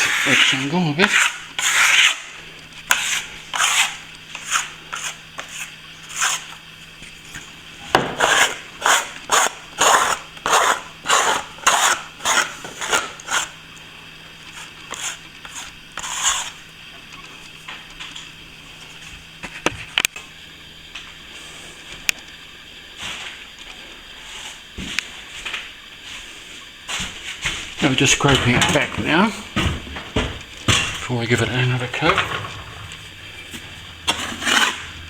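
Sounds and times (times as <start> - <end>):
hand tool scraping plaster: 0.0 - 6.6, 8.2 - 13.6, 14.5 - 16.6, 31.0 - 35.0.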